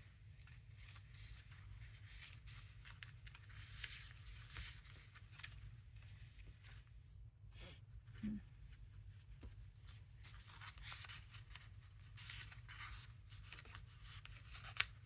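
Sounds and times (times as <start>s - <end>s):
paper cards rustling and sliding: 0.2s - 6.9s, 9.8s - 15.0s.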